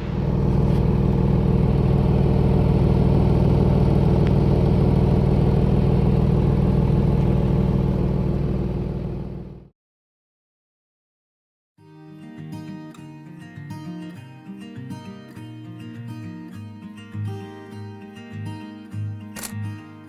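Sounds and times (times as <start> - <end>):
vehicle engine droning: 0.0 - 9.7.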